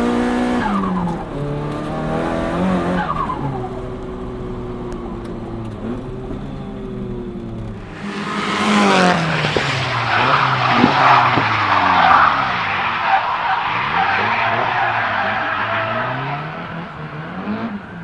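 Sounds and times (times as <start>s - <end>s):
car engine revving: 0.0s - 18.0s
tyre squeal and skidding: 7.8s - 18.0s.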